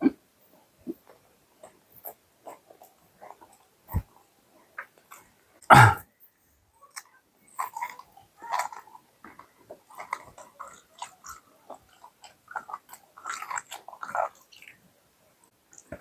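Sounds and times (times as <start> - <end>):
person biting and chewing food: 6.9 - 14.8.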